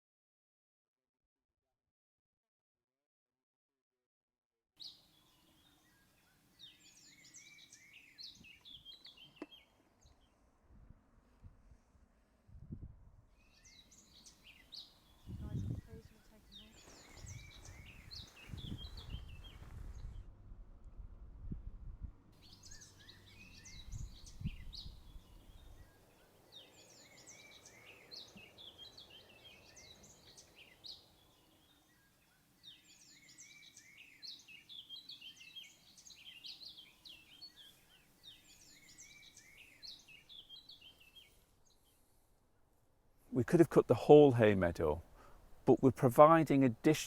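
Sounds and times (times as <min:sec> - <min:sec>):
birds chirping and trilling: 0:04.8 - 0:10.4, 0:13.3 - 0:20.2, 0:22.4 - 0:42.2.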